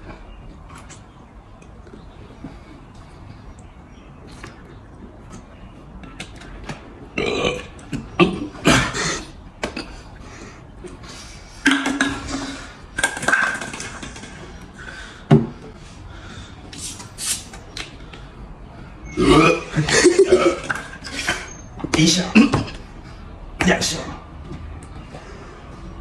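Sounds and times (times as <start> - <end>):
person burping: 7.1 - 9.9, 19.1 - 21.0.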